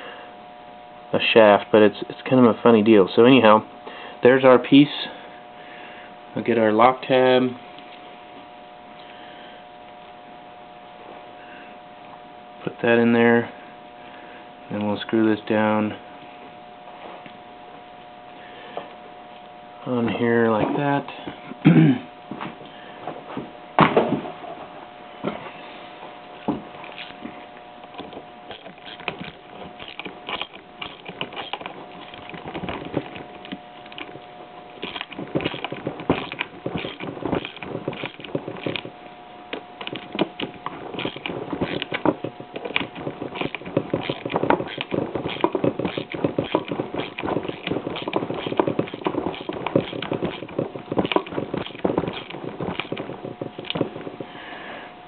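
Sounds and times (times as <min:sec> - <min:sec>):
faint steady hum: 0:00.0 - 0:55.0
small metallic clicks and scrapes: 0:26.8 - 0:27.2, 0:27.8 - 0:38.9, 0:39.6 - 0:54.3.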